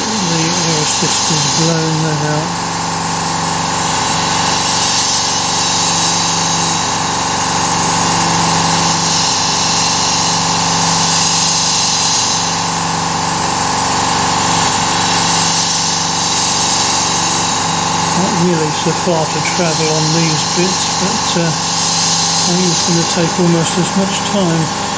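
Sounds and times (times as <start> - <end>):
air hiss: 0.0 - 2.8, 8.4 - 12.6, 14.6 - 24.9
low machine hum: 0.0 - 24.9
spindle whine with cutting noise: 0.0 - 24.9.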